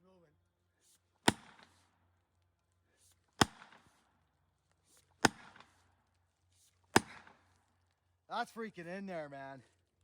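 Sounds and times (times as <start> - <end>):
axe hammering a wedge: 1.3 - 1.6, 3.4 - 3.8, 5.2 - 5.7, 7.0 - 7.4.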